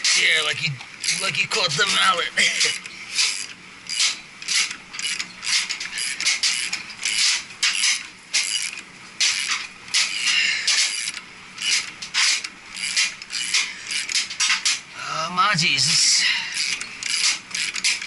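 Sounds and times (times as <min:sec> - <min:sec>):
ratchet wrench clicking: 0:02.6 - 0:14.7, 0:16.6 - 0:18.0.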